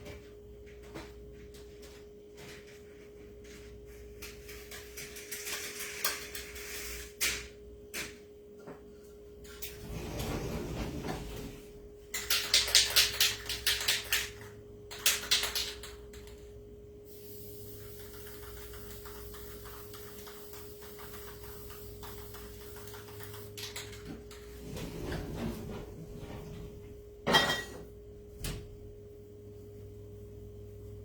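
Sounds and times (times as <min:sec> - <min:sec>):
spray hiss: 0:17.1 - 0:23.4.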